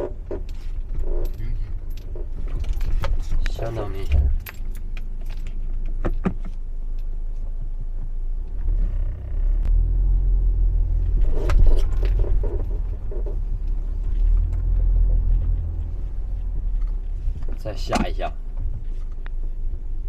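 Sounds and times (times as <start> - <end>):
suspension creaks and squeaks: 0.0 - 19.7
car road rumble: 0.0 - 20.0.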